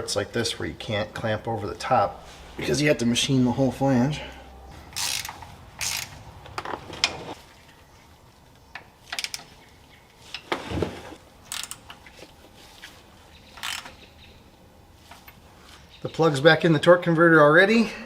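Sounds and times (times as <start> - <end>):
ratchet wrench clicking: 4.9 - 6.2, 11.5 - 11.9, 13.6 - 14.0.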